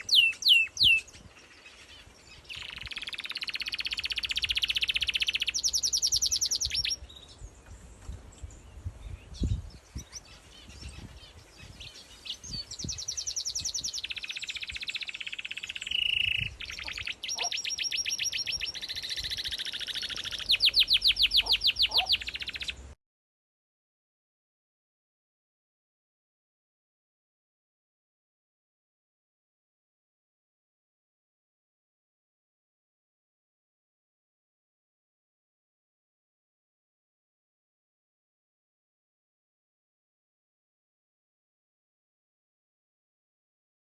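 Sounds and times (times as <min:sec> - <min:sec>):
woodpecker rattling call: 0:14.0 - 0:22.7.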